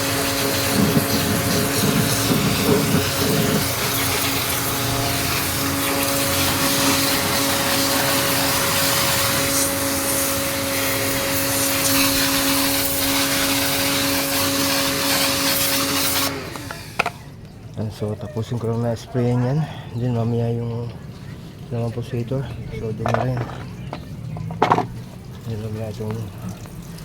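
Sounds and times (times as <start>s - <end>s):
water jet hissing: 0.0s - 17.4s
pressure washer motor humming: 0.0s - 17.6s.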